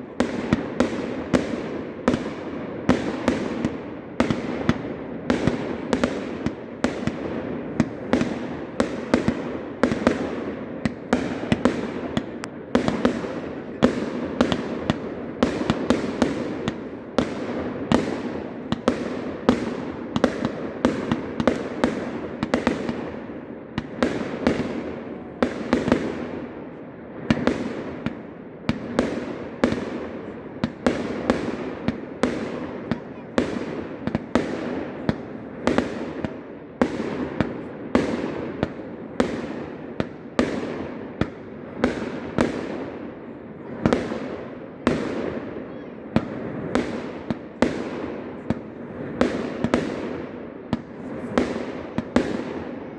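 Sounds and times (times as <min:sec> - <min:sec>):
fireworks banging: 0:00.0 - 0:23.2, 0:27.3 - 0:52.8
fireworks crackling: 0:27.3 - 0:52.8.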